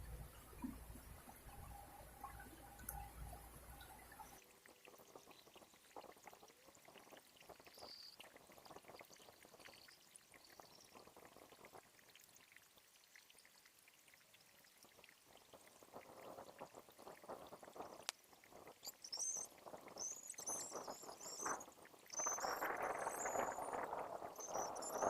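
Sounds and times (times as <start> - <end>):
faint low rumble: 0.0 - 4.4
faint ticks and drips: 0.0 - 25.0.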